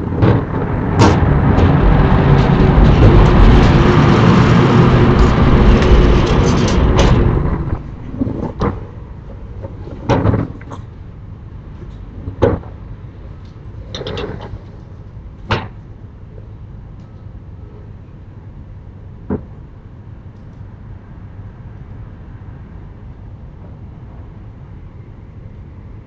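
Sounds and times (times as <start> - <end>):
rattling clatter: 0.0 - 10.9, 13.7 - 15.8
low background rumble: 0.0 - 26.0
door bangs and knocks: 0.1 - 7.8.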